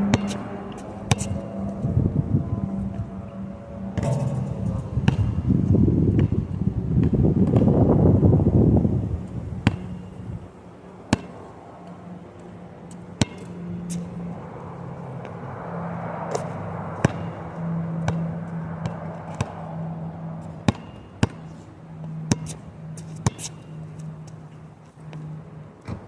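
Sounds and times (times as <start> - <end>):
basketball bouncing on court: 0.0 - 1.5, 3.9 - 7.9, 9.6 - 10.2, 11.1 - 11.4, 13.2 - 14.0, 16.3 - 17.4, 18.0 - 19.9, 20.5 - 21.5, 22.1 - 23.4
wind on microphone: 0.0 - 10.6, 13.9 - 20.6
steady low hum: 0.0 - 26.0.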